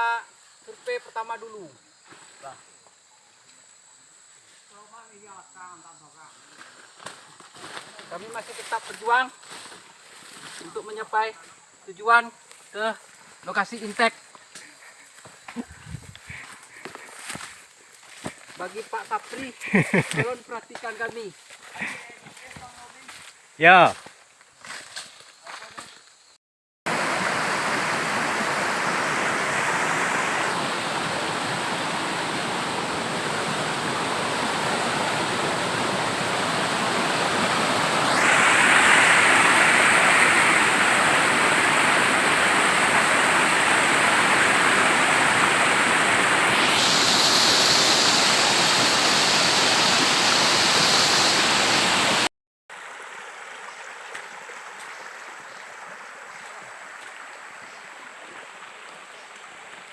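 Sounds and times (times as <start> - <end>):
waterfall rushing: 26.9 - 52.3.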